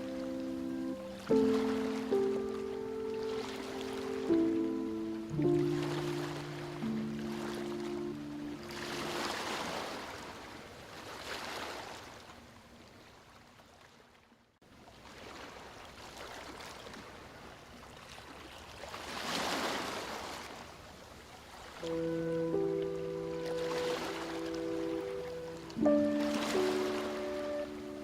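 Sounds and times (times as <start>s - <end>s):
sea waves washing: 0.0s - 12.0s, 21.7s - 28.0s.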